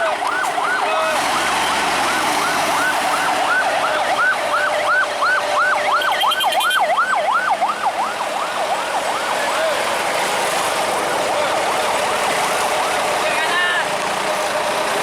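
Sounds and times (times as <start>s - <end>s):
siren yelping: 0.0s - 9.9s
vehicle and road noise: 0.0s - 15.0s.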